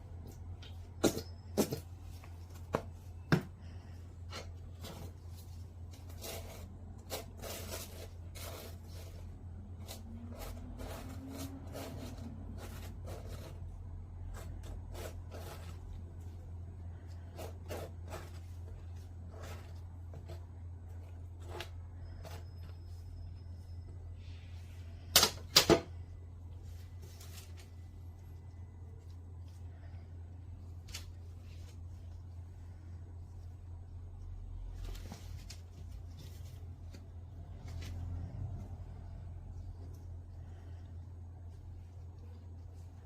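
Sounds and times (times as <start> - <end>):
steady low hum: 0.0 - 43.0
rustling: 26.4 - 43.0.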